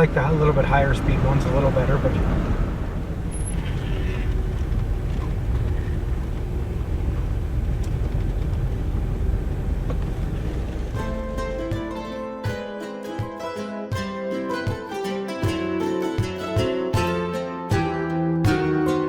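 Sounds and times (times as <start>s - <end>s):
car driving on paved road: 0.0s - 11.7s
plucked string music: 10.9s - 19.0s.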